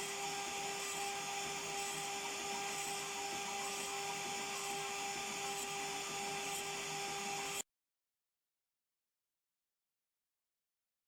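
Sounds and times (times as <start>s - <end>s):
router milling wood: 0.0s - 7.6s
router spindle whining: 0.0s - 7.6s.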